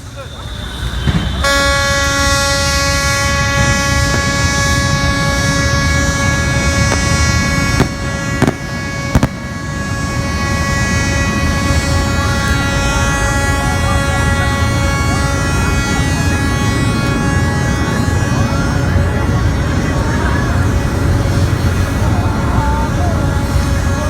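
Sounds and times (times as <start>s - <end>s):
low rumbling: 0.0s - 24.0s
ship horn blast: 0.0s - 24.0s
sharp bangs: 0.6s - 11.8s.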